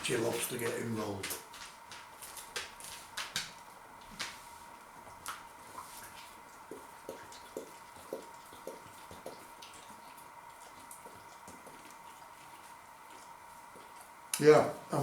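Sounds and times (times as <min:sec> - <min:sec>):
dog lapping water: 0:05.6 - 0:14.2.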